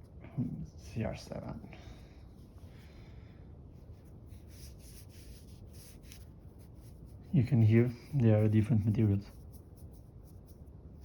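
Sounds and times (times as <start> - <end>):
fingers rubbing fabric: 4.0 - 10.7.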